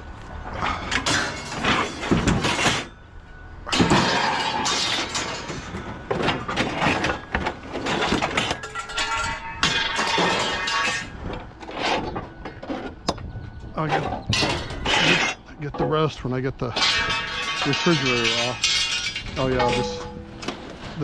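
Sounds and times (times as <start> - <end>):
scrap metal clanking and rattling: 0.3 - 21.0
ringing metal scrape: 6.7 - 15.6, 16.7 - 21.0.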